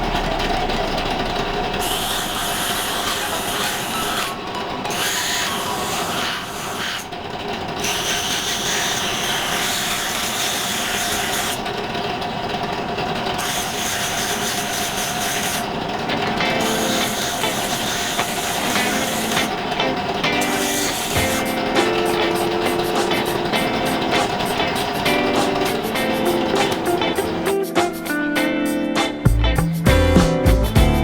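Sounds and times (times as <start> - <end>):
power tool motor whining: 0.0 - 27.5
hissing rasping: 1.8 - 7.2, 13.4 - 28.1.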